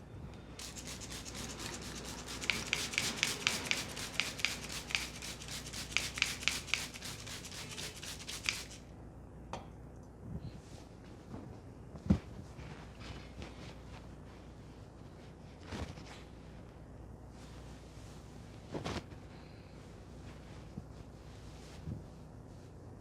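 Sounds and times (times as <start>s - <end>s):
fingers rubbing through hair: 0.6s - 8.8s.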